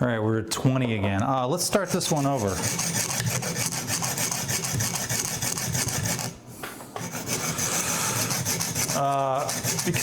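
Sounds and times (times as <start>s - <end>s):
sharpening stone scraping knife edge: 1.9s - 6.4s, 7.0s - 10.0s.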